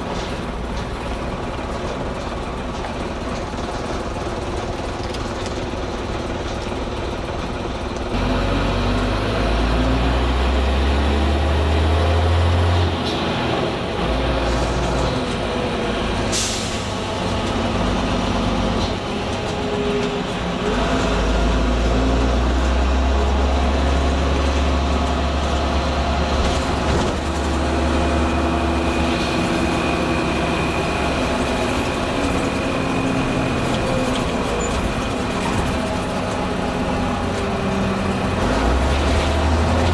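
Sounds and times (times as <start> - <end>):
bus diesel engine pulling: 0.0 - 39.9.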